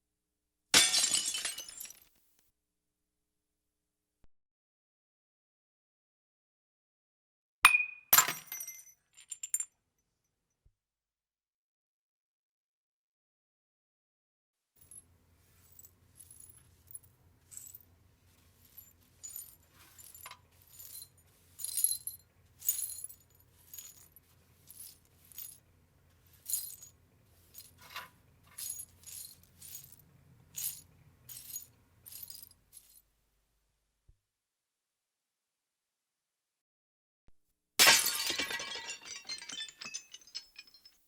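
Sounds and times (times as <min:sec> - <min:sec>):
broken glass tinkling: 0:00.8 - 0:02.0, 0:37.8 - 0:41.0.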